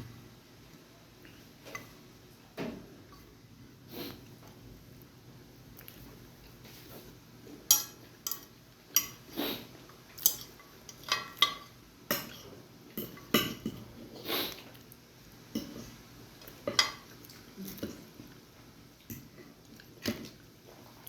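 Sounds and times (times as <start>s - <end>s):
cutlery clinking against plate: 7.7s - 9.2s, 10.2s - 13.9s.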